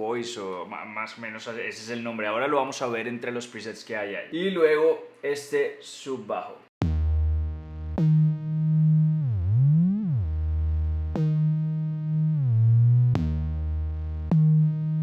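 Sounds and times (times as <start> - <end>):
gliding synthesizer sub-bass: 6.8 - 15.0.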